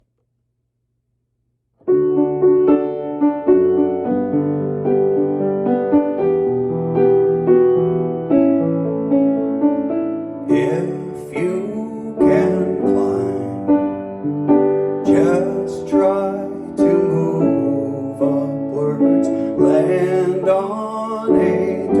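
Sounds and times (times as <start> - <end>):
piano music: 1.8 - 22.0.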